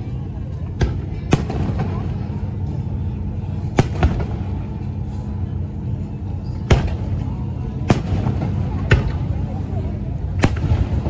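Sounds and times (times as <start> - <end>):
low rumble: 0.0 - 11.0
fireworks bangs: 0.7 - 2.4, 3.7 - 4.6, 7.8 - 9.3.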